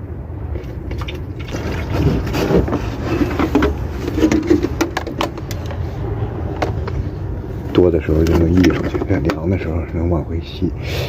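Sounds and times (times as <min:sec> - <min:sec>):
steady low rumble: 0:00.0 - 0:11.0
water gurgling into reservoir: 0:00.5 - 0:02.7.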